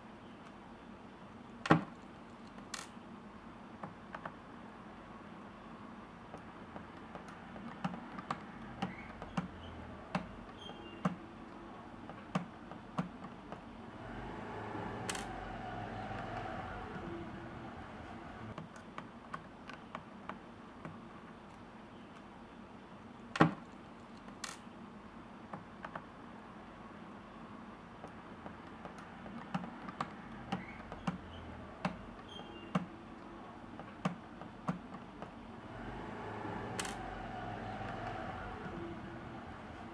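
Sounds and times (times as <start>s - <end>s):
plastic parts clicking and tapping: 1.6s - 3.0s, 6.3s - 13.7s, 23.3s - 24.7s, 28.0s - 35.4s, 36.8s - 37.0s.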